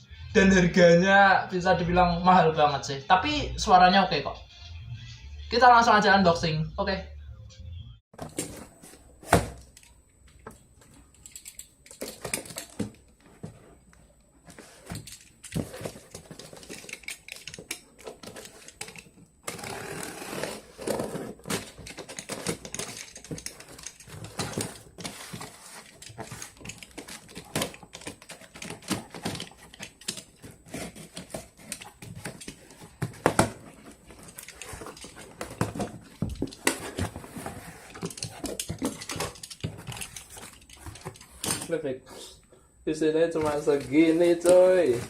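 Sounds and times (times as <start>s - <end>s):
packaging rustling and scraping: 8.2s - 42.4s, 43.3s - 45.0s.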